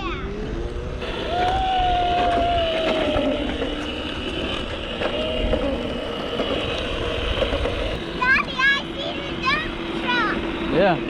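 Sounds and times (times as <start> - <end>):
electric motor whine: 0.2 - 11.0
low rumble: 0.3 - 8.5.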